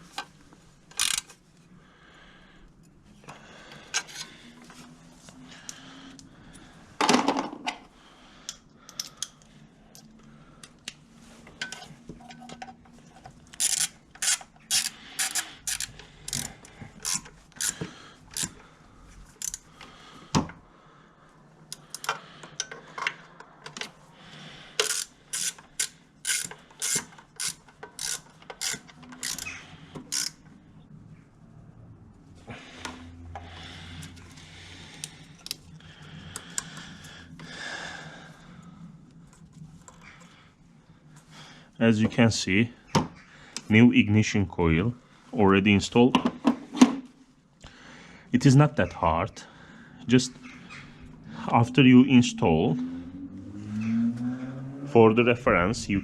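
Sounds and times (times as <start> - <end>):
socket ratchet clicking: 0.9 - 1.4, 13.5 - 18.6, 19.4 - 19.7, 24.8 - 30.4.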